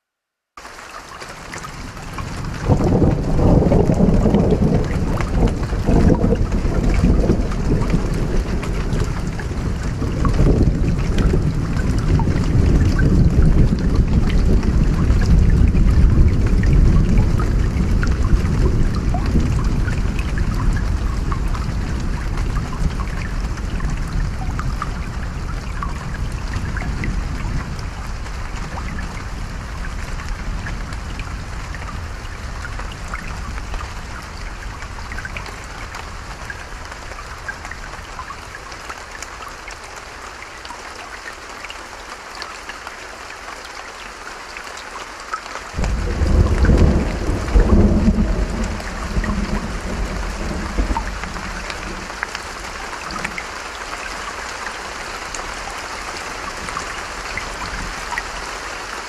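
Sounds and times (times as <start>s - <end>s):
rain: 0.5s - 59.0s
raindrops crackling: 0.6s - 59.0s
stream running: 0.6s - 59.0s
low thunder rumble: 1.8s - 37.4s, 45.8s - 53.4s
thunder clap: 2.2s - 25.5s, 45.8s - 53.4s.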